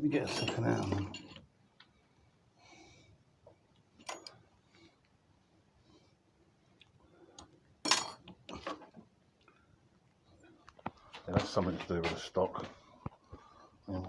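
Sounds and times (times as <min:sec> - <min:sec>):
metal parts clinking: 0:00.2 - 0:01.4, 0:04.0 - 0:04.4, 0:07.8 - 0:08.9.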